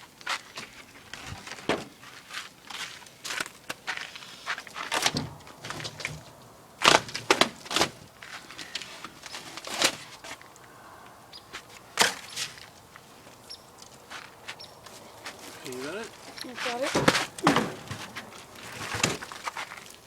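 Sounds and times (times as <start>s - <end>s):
window pane knocking and crackling: 16.8s - 19.3s.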